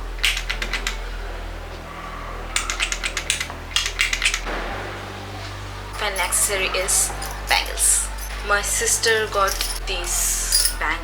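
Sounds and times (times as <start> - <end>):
low hum: 0.0 - 11.0
glass bangles clinking: 5.8 - 11.0.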